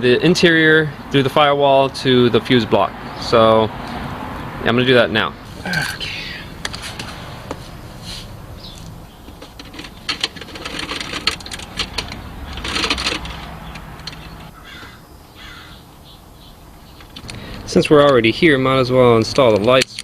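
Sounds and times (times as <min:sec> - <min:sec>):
clicks and rustling of wiring: 0:08.7 - 0:14.6, 0:16.9 - 0:18.3, 0:19.0 - 0:20.0.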